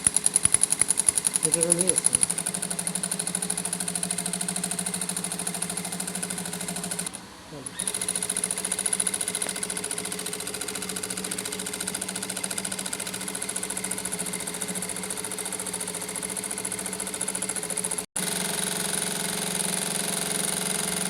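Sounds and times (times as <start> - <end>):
sewing machine stitching: 0.0 - 21.0.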